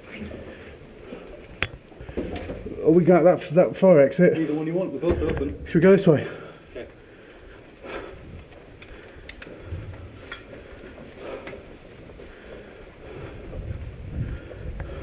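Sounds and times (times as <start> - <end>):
footsteps: 0.0 - 15.0
wind buffeting microphone: 12.4 - 15.0.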